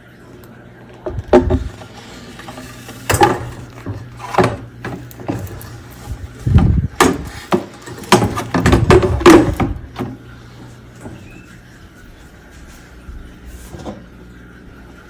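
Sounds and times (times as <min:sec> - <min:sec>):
hard parts knocking and clattering: 0:01.0 - 0:10.2.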